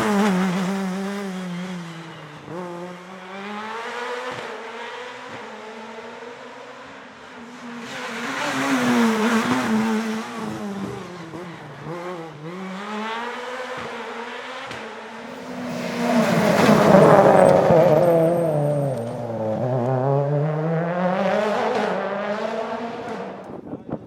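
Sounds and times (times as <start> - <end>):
rally car engine revving: 7.6 - 23.6.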